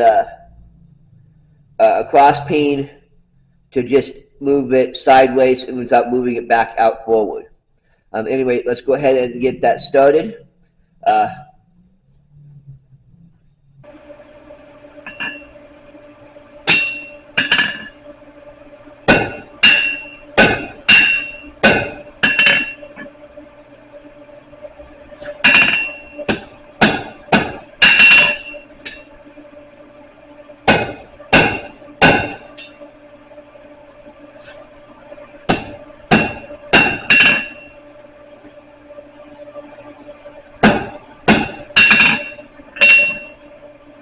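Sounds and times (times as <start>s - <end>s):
faint steady hum: 0.0s - 44.0s
hammer striking metal on anvil: 16.7s - 18.0s, 19.1s - 22.8s, 25.2s - 29.1s, 30.7s - 32.8s, 35.5s - 37.8s, 40.6s - 43.4s.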